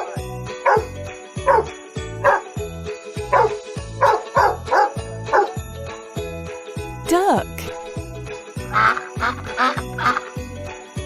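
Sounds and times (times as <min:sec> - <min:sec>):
dog barking: 0:00.6 - 0:02.5, 0:03.3 - 0:05.6.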